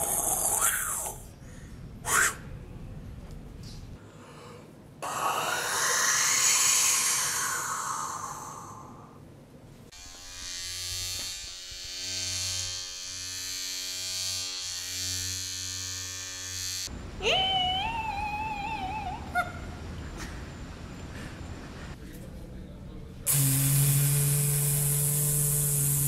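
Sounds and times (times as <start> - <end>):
mouth hissing whoosh: 5.0 - 9.2.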